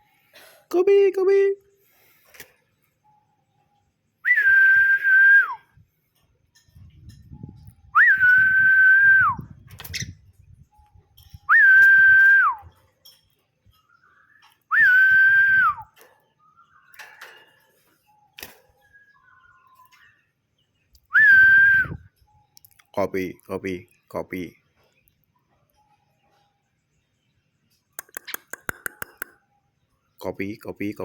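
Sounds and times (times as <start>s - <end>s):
whistles: 4.2s - 5.8s, 7.4s - 10.2s, 11.2s - 12.8s, 14.2s - 17.1s, 21.0s - 22.4s.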